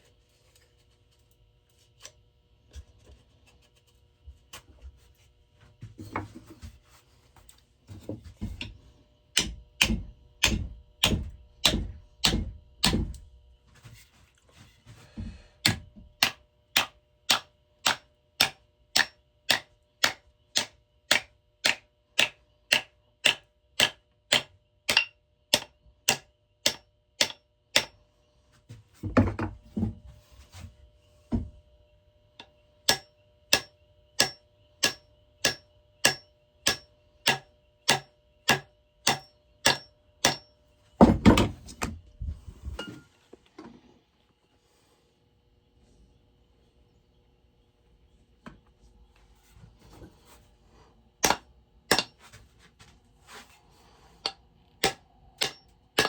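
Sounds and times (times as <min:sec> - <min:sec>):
hammer striking wooden wedge: 0:08.5 - 0:13.2, 0:15.6 - 0:28.0, 0:32.4 - 0:41.9, 0:51.2 - 0:52.3, 0:54.2 - 0:56.0
dull hammer thuds: 0:41.0 - 0:42.0.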